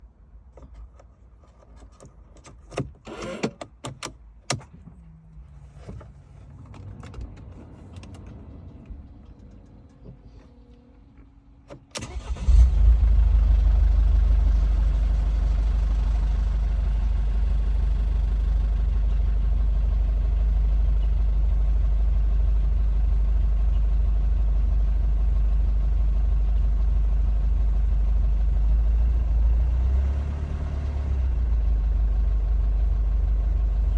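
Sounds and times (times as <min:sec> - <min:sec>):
diesel engine starting and idling: 0:04.5 - 0:33.9.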